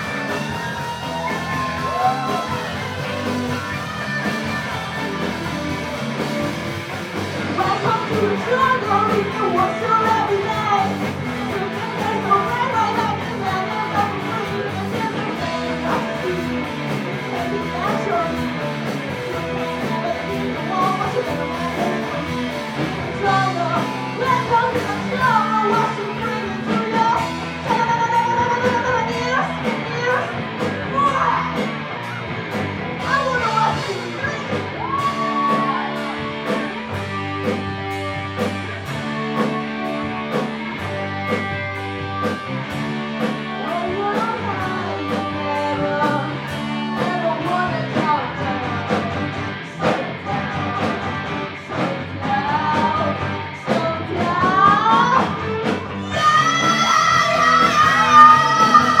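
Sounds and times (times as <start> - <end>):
person singing lead vocal: 0.0 - 6.5, 7.4 - 31.7, 33.0 - 36.8, 43.5 - 59.0
live rock band playing: 0.0 - 59.0.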